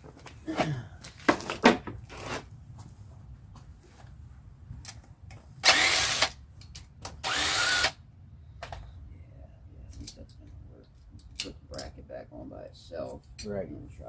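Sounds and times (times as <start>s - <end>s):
cordless drill running: 5.6s - 6.4s, 7.2s - 8.0s.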